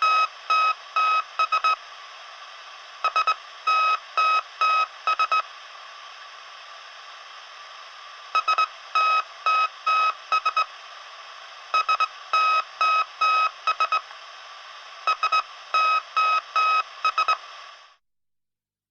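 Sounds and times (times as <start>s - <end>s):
morse code beeping tone: 15.1s - 17.4s.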